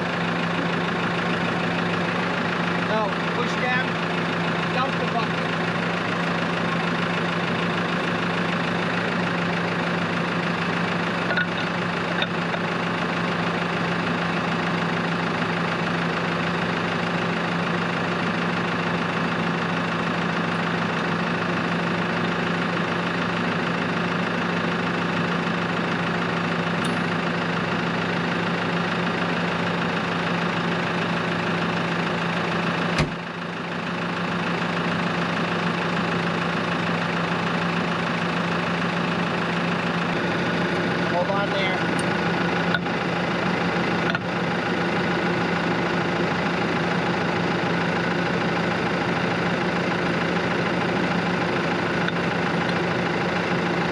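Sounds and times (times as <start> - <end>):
tractor diesel engine idling: 0.0 - 53.9
sharp clunk: 33.0 - 33.2.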